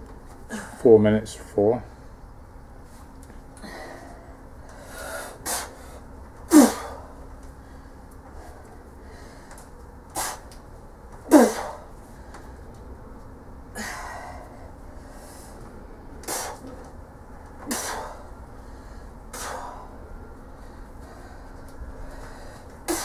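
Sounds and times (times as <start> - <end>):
woman's forceful breaths of effort: 0.4 - 0.8, 3.5 - 10.6, 11.2 - 12.7, 13.7 - 16.9, 17.6 - 23.0.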